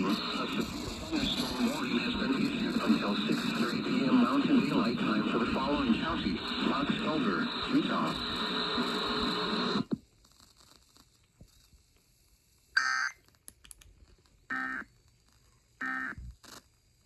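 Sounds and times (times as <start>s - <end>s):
broadcast voice: 0.0s - 9.3s
warbling data burst tones: 12.8s - 13.2s.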